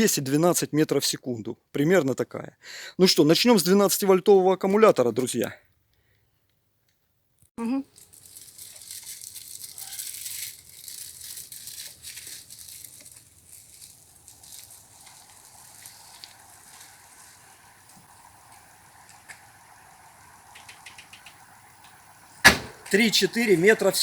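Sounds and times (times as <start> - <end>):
crackling and rustling: 7.8 - 23.9.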